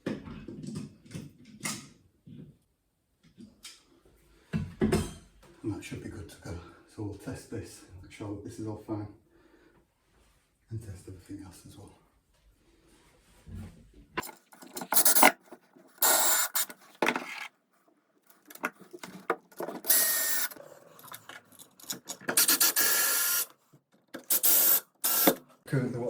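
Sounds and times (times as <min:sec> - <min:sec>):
metal tools scraping: 0:14.2 - 0:17.5, 0:18.3 - 0:23.4.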